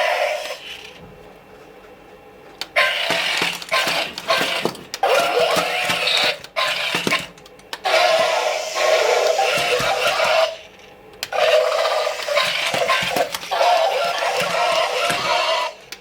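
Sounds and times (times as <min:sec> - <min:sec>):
robot toy sound effects: 0:02.8 - 0:10.7, 0:11.3 - 0:15.9.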